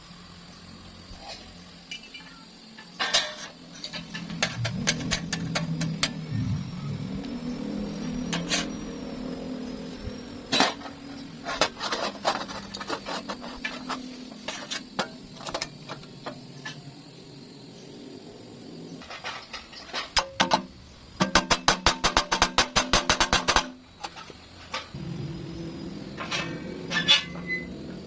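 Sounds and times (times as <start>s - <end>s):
low machine hum: 3.6s - 12.7s.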